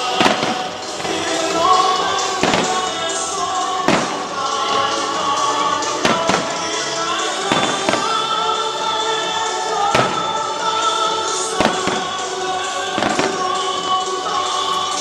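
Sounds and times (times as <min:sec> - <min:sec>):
fireworks bangs: 0:00.0 - 0:15.0
loud show music: 0:00.0 - 0:15.0.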